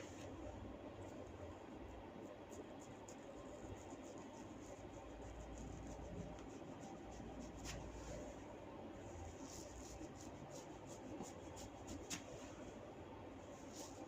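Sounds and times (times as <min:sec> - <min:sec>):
hair crackling and rustling: 0:09.6 - 0:12.6.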